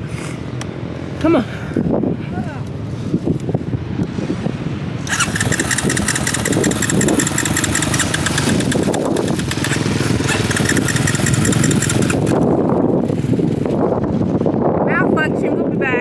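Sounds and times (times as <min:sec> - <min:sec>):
engine running: 0:05.0 - 0:13.9.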